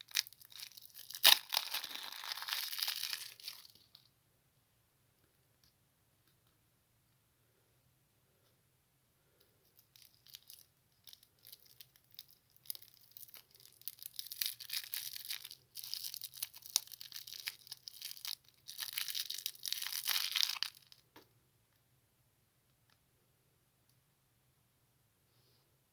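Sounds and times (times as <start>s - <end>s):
candy wrappers crinkling and tearing: 0.0s - 4.1s, 9.7s - 21.0s.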